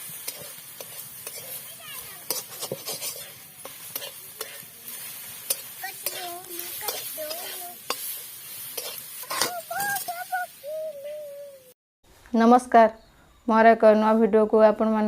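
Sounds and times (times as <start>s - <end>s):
utensil scraping a pan: 0.0s - 10.1s
greens sizzling in a pan: 0.0s - 11.7s.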